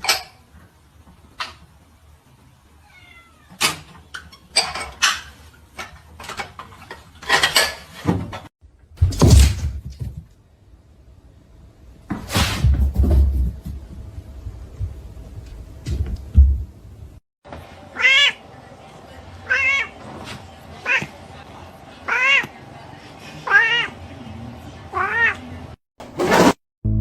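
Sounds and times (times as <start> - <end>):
heavy thumps and rumbling: 12.1 - 17.2.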